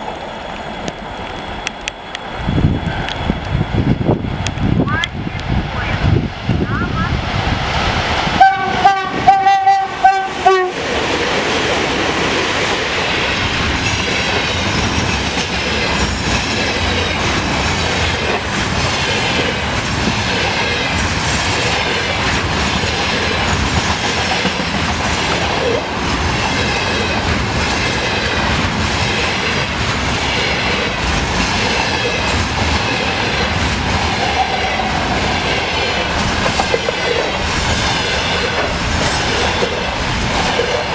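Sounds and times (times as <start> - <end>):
train rolling past: 0.0 - 40.9
locomotive horn blasts: 8.4 - 10.8
wheels clacking over rail joints: 10.8 - 40.9.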